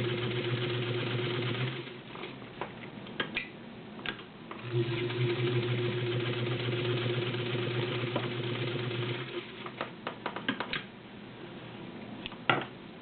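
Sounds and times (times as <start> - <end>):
sewing machine stitching leather: 0.0 - 2.0, 4.6 - 9.8.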